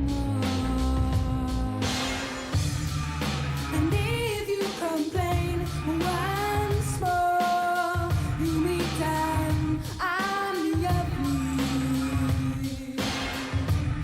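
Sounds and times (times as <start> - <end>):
low bass line: 0.0 - 4.3, 5.3 - 7.1, 8.1 - 9.9, 10.9 - 12.7
pop song with singing: 0.0 - 14.0.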